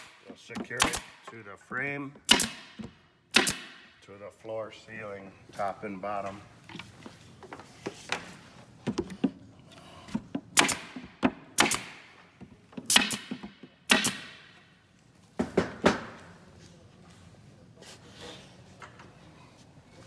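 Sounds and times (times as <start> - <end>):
stapler shots: 0.0 - 1.3, 2.3 - 3.8, 10.5 - 12.0, 12.8 - 14.4.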